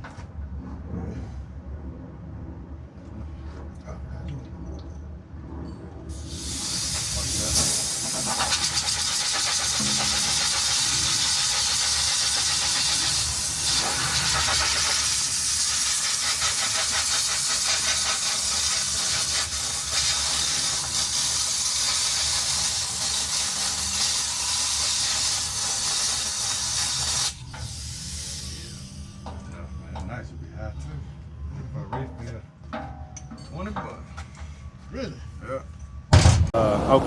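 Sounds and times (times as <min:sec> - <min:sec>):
spray hissing: 0:06.1 - 0:29.2.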